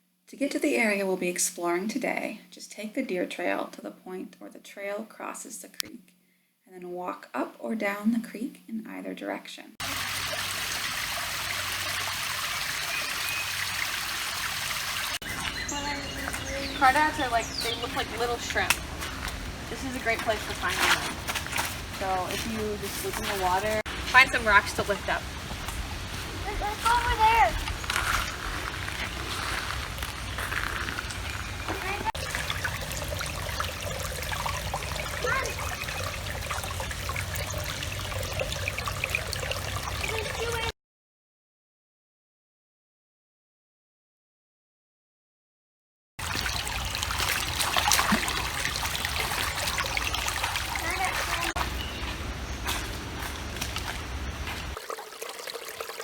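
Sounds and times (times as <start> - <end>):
creek water flowing: 9.8 - 40.7, 46.2 - 56.0.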